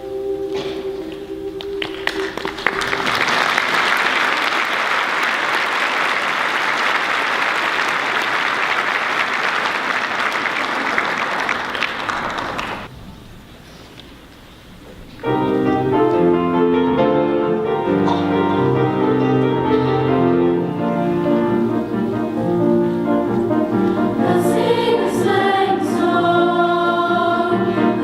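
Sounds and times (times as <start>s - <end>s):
choir holding a chord: 0.0s - 4.6s, 15.2s - 28.0s
audience applause: 1.8s - 12.9s.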